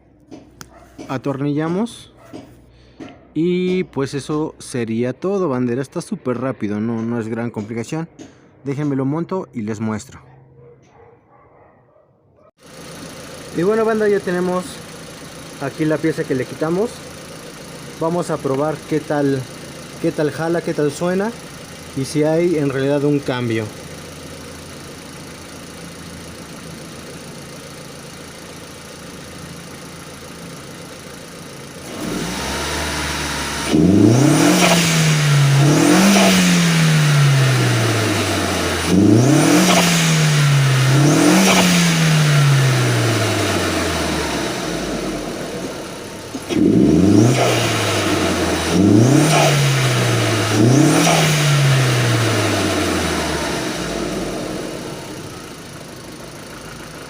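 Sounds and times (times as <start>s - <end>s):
turbo car engine revving: 12.6s - 57.0s.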